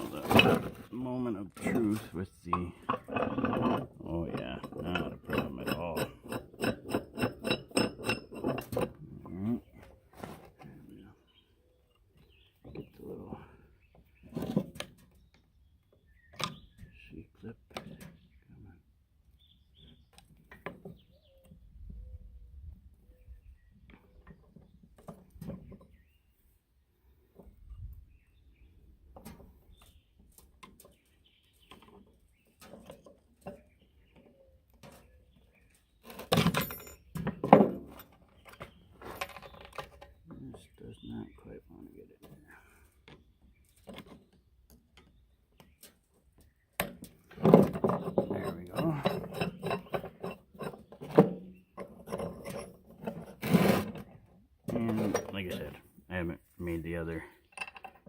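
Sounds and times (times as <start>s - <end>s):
metal on metal clatter: 0.0s - 0.9s, 1.6s - 9.0s, 46.8s - 54.1s
metal rasping scrape: 0.0s - 0.9s, 1.5s - 9.1s, 47.3s - 54.2s
metal vise parts clicking and knocking: 1.6s - 9.0s, 46.8s - 53.3s, 57.5s - 58.0s.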